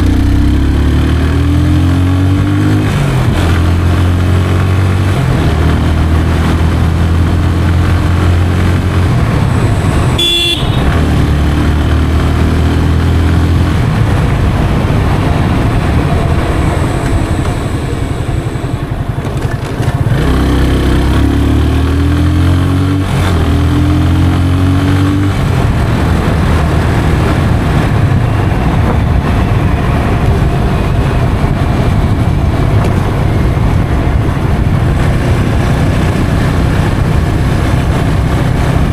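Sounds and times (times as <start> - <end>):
motorcycle engine running: 0.0 - 38.9
short horn toot: 10.2 - 11.0.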